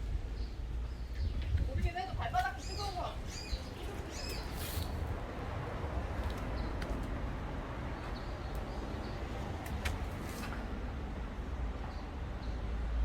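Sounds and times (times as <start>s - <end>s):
small birds chirping: 0.3s - 5.1s.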